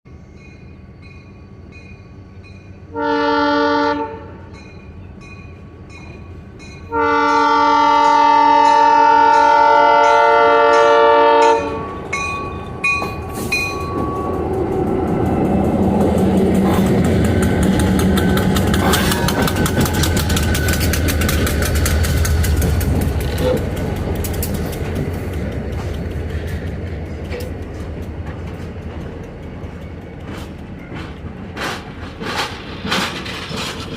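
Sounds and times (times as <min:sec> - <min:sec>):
train engine rumble: 0:00.1 - 0:33.9
train air horn blasts: 0:02.9 - 0:04.5, 0:06.9 - 0:12.1, 0:18.2 - 0:20.5, 0:23.3 - 0:23.8
wheels clicking over rail joints: 0:11.4 - 0:33.9.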